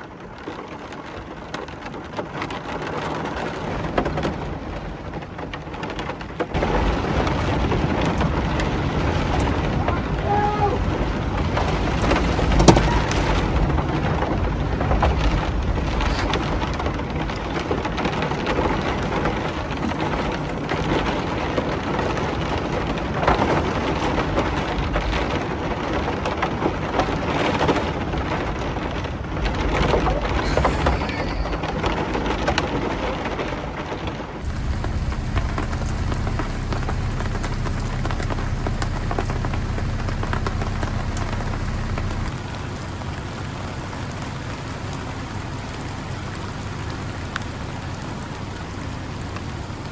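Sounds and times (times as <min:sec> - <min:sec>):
heavy rain pattering: 0:00.1 - 0:21.5, 0:34.4 - 0:49.9
low hum: 0:34.4 - 0:49.9
low rumble: 0:34.4 - 0:49.9.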